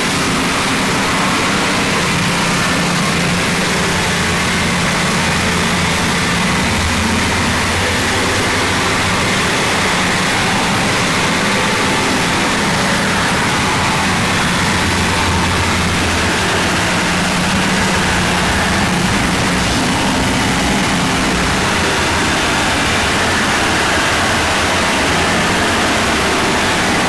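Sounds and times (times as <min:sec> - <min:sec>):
loud distorted noise: 0:00.0 - 0:27.0
steady low drone: 0:00.0 - 0:27.0.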